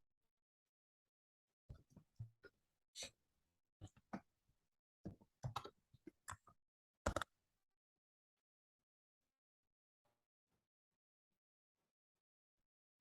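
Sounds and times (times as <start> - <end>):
keyboard and mouse clicking: 7.1 - 7.3.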